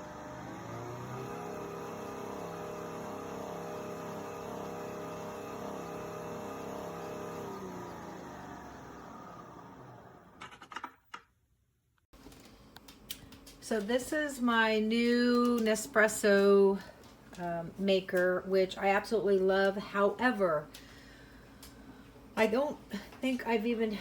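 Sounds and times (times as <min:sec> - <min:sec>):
coffee machine motor humming: 0:00.0 - 0:10.5.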